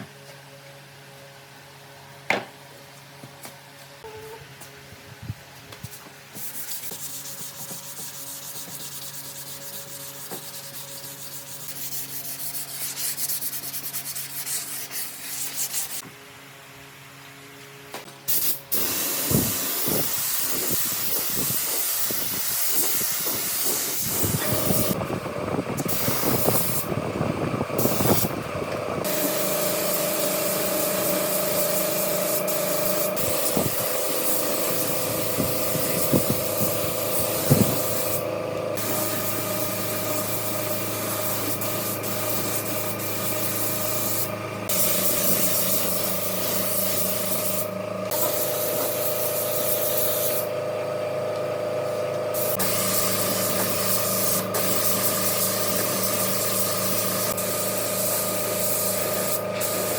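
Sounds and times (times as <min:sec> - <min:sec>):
power tool running: 0:18.5 - 0:59.9.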